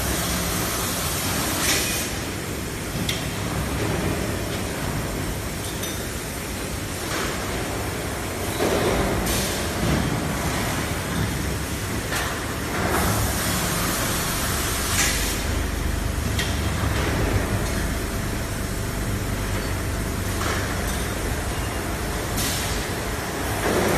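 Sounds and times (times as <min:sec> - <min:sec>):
machine mechanical rumble: 0:12.9 - 0:23.9.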